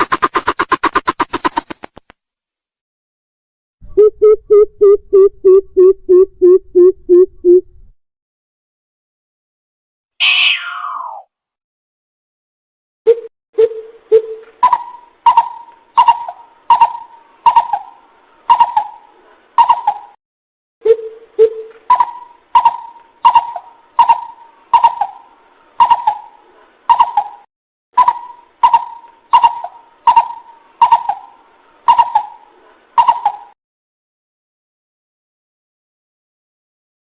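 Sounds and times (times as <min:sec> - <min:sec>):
deep hollow bird hooting: 0:20.8 - 0:27.4, 0:28.0 - 0:33.5.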